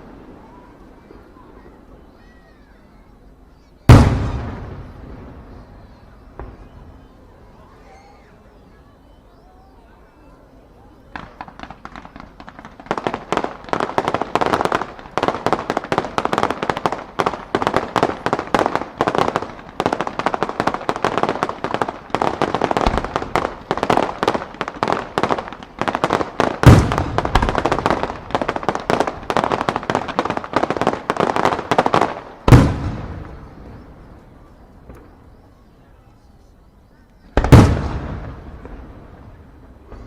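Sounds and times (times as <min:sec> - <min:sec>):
fireworks bursts and crackles: 0:00.0 - 0:40.0
heavy firework booms: 0:03.8 - 0:07.3, 0:11.1 - 0:35.5, 0:37.3 - 0:40.0.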